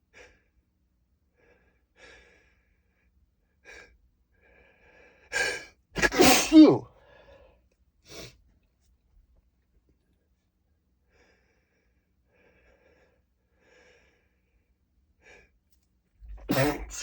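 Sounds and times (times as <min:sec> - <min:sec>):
man breathing softly: 0:07.0 - 0:08.3, 0:11.0 - 0:15.6.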